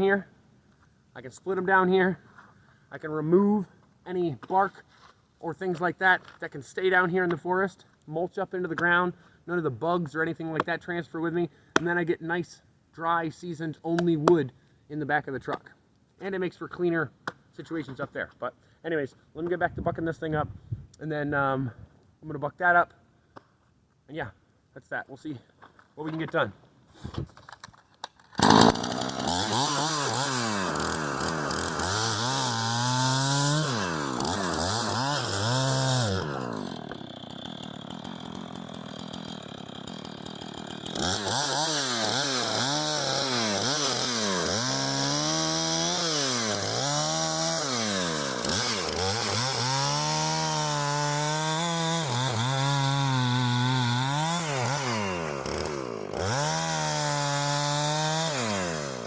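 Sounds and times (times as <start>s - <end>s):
chainsaw cutting log: 28.2s - 59.0s.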